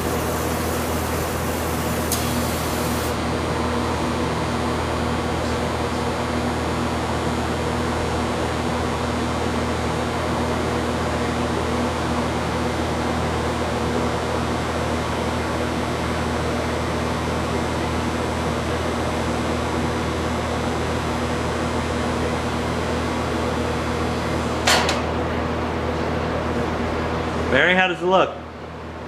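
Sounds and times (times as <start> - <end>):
welding arc hiss: 0.0 - 3.2.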